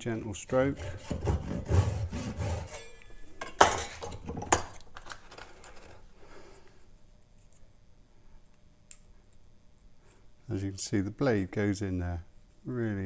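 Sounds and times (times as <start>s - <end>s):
hand saw rasping: 0.5s - 3.0s.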